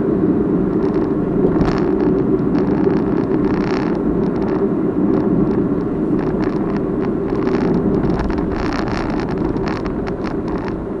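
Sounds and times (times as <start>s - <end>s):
car road and engine rumble: 0.0s - 11.0s
dash camera rattling on mount: 6.2s - 10.8s.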